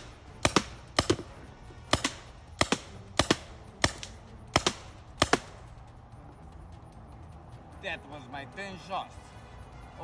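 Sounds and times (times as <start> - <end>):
paintball gun shots: 0.0 - 5.7.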